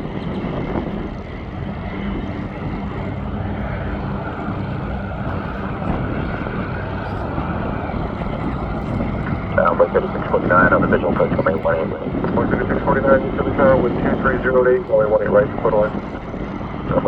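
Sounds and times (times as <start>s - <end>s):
faint engine whine: 0.0s - 17.0s
jet engines rushing: 0.0s - 17.0s.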